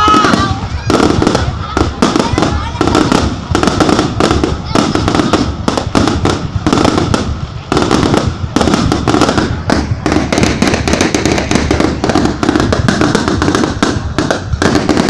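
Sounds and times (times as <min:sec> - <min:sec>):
fireworks cracks and bangs: 0:00.0 - 0:15.0
steady low rumble: 0:00.0 - 0:15.0.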